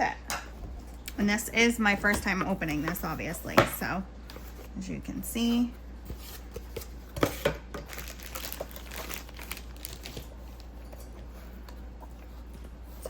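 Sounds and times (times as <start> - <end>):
packaging crinkling and rustling: 7.8 - 10.8.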